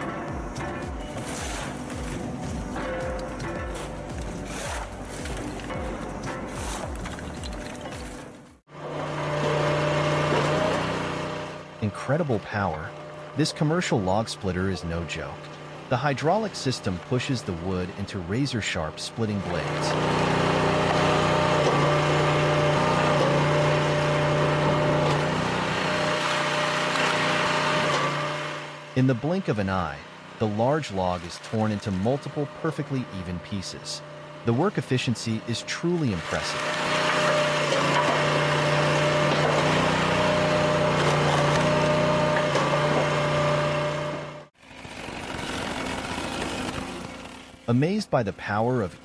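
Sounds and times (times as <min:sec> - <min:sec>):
machine sound: 0:00.0 - 0:08.6, 0:19.4 - 0:49.0
log splitter engine humming: 0:00.0 - 0:49.0
log splitting: 0:01.0 - 0:08.5.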